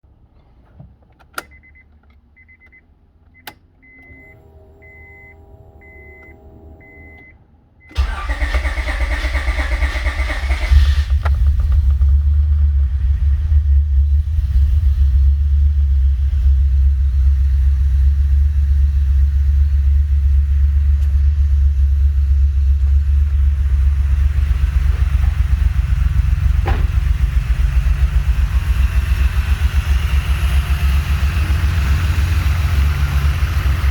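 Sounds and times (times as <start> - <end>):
clicks: 0.4 - 4.3
dashboard chime beep: 3.9 - 7.4
engine idling rough: 8.0 - 33.9.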